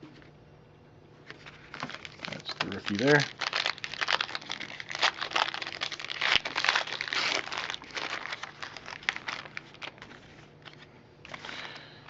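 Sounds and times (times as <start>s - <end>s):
plastic wrapper crinkling: 1.3s - 10.9s.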